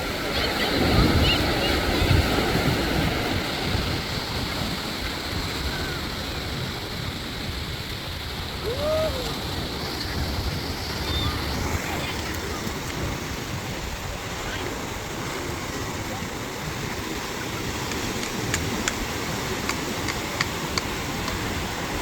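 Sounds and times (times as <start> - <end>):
ocean surf breaking: 0.0 - 22.0
wind buffeting microphone: 0.0 - 22.0
short rising and falling cry: 8.6 - 9.5.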